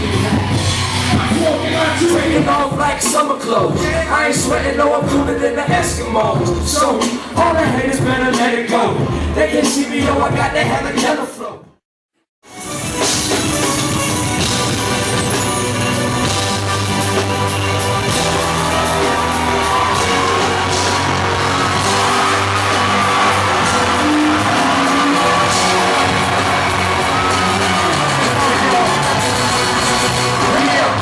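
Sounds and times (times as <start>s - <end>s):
hip-hop music over club speakers: 0.0s - 11.6s, 12.5s - 31.0s
audience whooping and shouting: 17.2s - 31.0s.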